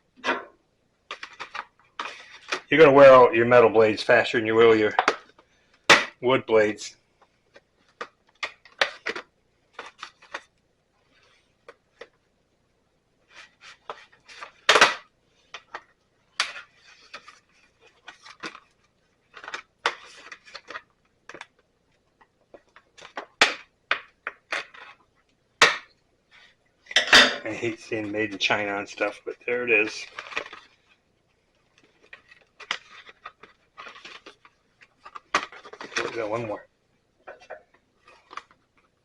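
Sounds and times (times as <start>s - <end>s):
packaging rustling: 1.1s - 2.9s, 7.4s - 12.2s, 13.2s - 25.1s, 27.7s - 36.6s, 37.7s - 39.0s.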